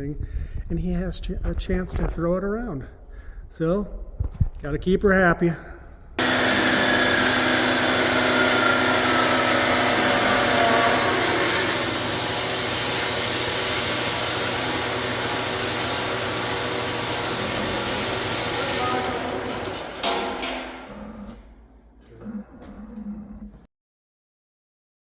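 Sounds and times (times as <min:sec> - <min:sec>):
metal-cutting power saw running: 0:06.2 - 0:21.5.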